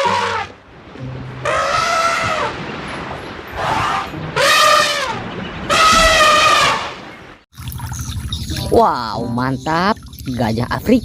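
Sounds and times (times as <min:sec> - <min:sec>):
elephant trumpeting: 0:00.0 - 0:00.6, 0:01.4 - 0:02.6, 0:03.5 - 0:07.0.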